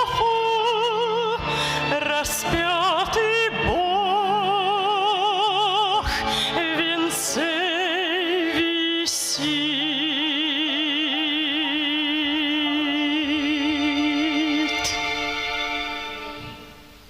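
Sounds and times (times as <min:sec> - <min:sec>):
person singing with vibrato: 0:00.0 - 0:16.8
instrumental accompaniment: 0:06.0 - 0:17.0.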